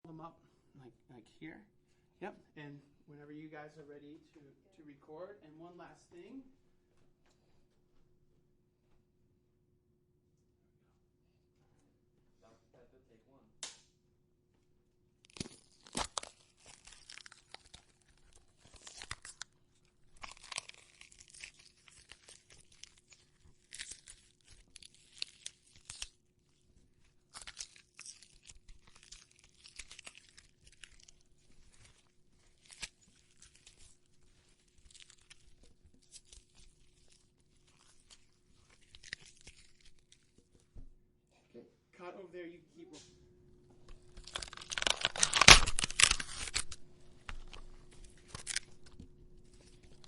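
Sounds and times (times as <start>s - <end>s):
wet crunches and tearing: 15.2s - 40.6s, 44.1s - 50.0s.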